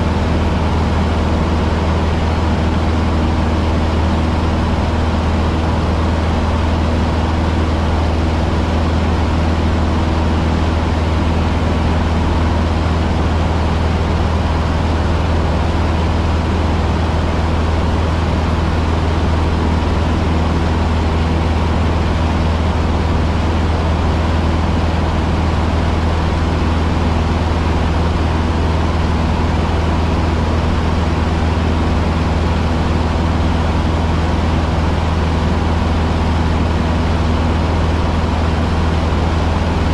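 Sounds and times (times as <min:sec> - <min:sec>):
airplane engine low drone: 0:00.0 - 0:39.9.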